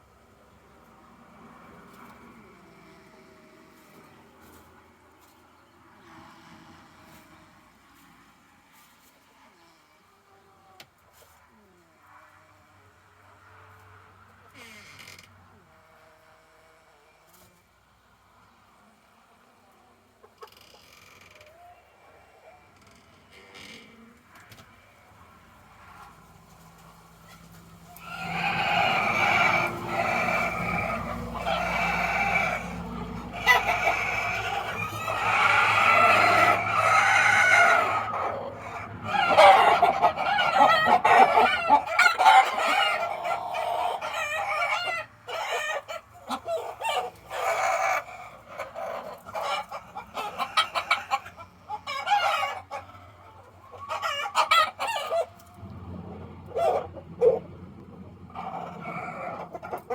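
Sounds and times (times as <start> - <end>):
roosters crowing: 25.7 - 59.9.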